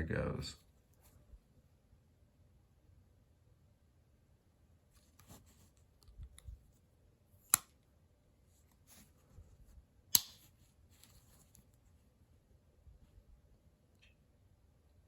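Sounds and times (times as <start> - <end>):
knife blade snapping shut: 10.1 - 10.4.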